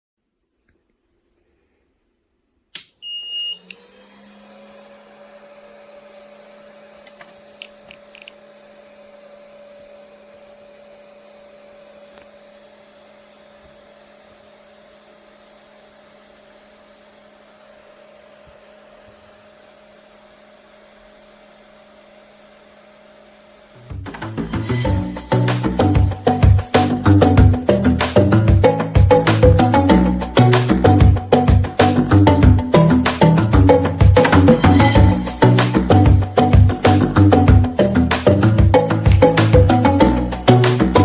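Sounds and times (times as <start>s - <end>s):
fan humming: 2.7s - 41.0s
short high beep: 3.0s - 3.7s.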